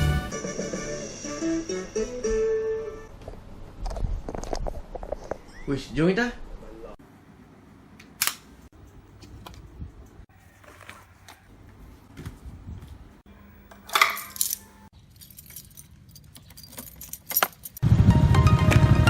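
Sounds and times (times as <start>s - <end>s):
metallic jangle: 14.2s - 17.8s.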